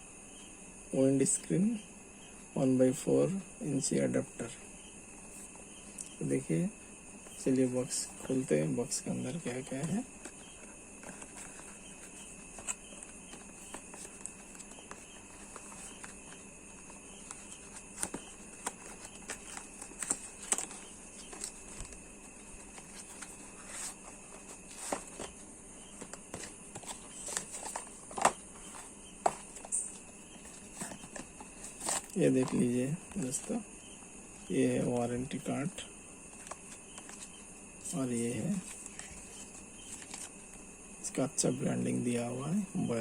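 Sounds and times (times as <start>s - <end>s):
packaging rustling: 9.2s - 33.6s.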